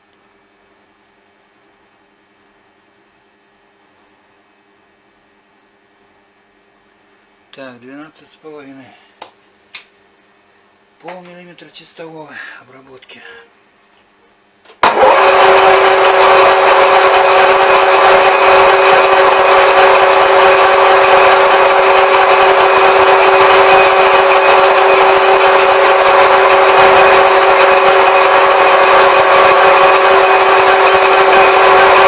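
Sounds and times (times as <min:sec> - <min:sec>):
lathe gear whine: 0:14.9 - 0:32.0.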